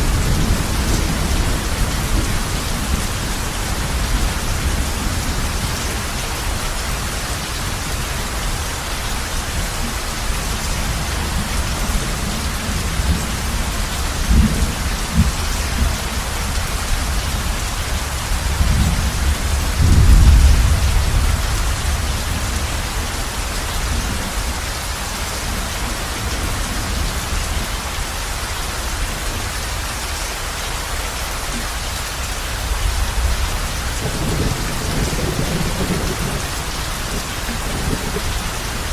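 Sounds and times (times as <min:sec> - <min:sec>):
heavy rain on a roof: 0:00.0 - 0:38.9
thunder rumbling: 0:10.4 - 0:27.8, 0:32.6 - 0:38.9.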